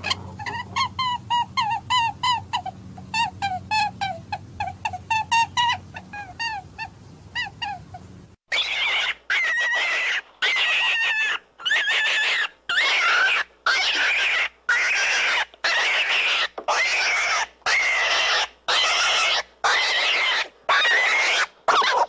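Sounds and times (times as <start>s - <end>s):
rabbit screaming: 0.0s - 22.0s.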